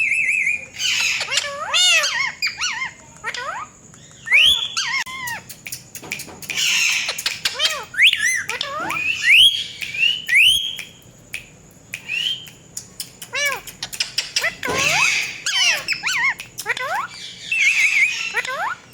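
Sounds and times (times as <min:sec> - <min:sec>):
parrot chirps: 0:00.0 - 0:18.9
parrot harsh squawk: 0:14.4 - 0:18.7.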